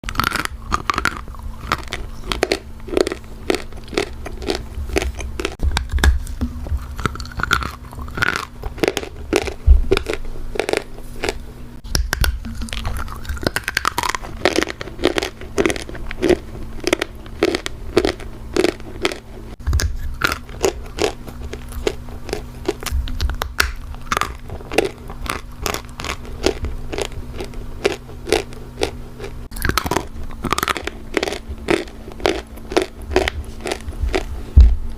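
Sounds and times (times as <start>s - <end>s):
chewing crunchy clay: 0.0s - 34.9s
steady low hum: 0.0s - 34.9s.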